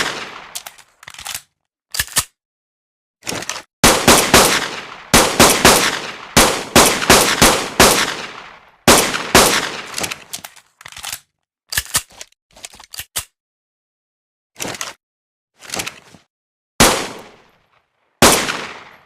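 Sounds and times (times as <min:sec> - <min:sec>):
pistol gunshots with echo: 0:00.0 - 0:00.6, 0:03.8 - 0:10.1, 0:16.8 - 0:17.4, 0:18.2 - 0:19.0.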